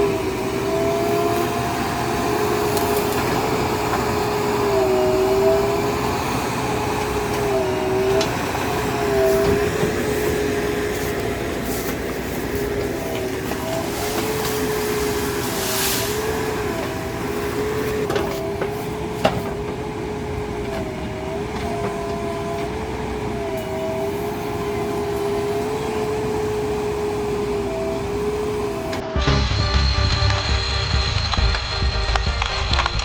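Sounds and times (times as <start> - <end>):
diesel engine with whining note: 0.0 - 33.0
music: 29.0 - 33.0.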